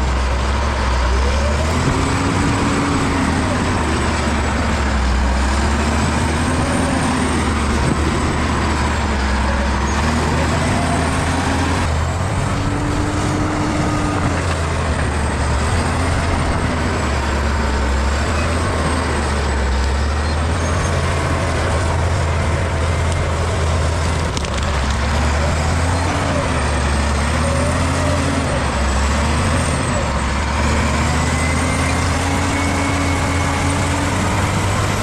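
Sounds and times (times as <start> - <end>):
bulldozer diesel engine rumbling: 0.0 - 35.0.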